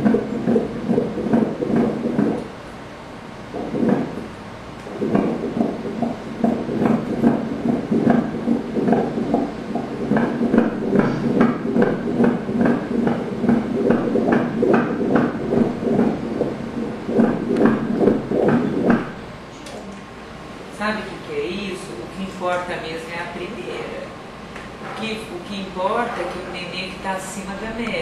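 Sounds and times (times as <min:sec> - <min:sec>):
doppler heartbeat whoosh: 0:00.0 - 0:02.4, 0:03.5 - 0:04.3, 0:04.9 - 0:19.2.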